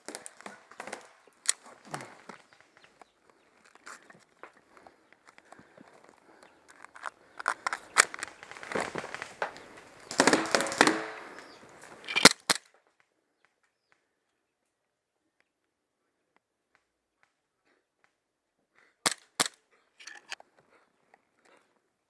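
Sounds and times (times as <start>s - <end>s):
rustling through brush: 0.0s - 12.3s
airsoft guns firing: 10.0s - 12.6s.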